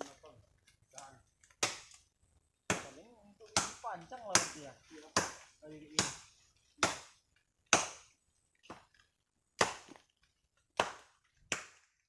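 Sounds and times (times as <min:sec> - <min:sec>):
blade chopping wood: 0:01.5 - 0:02.0, 0:02.7 - 0:08.9, 0:09.6 - 0:10.1, 0:10.7 - 0:12.0.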